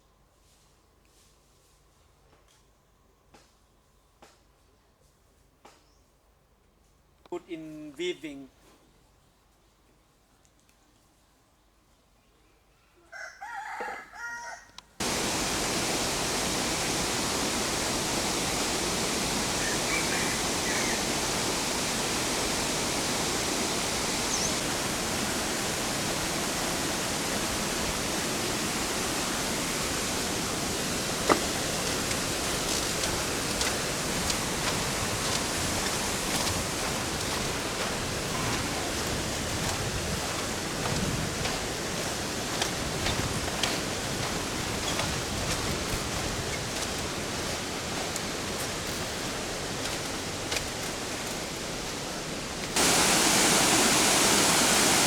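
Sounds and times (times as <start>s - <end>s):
waterfall rushing: 15.0s - 55.0s.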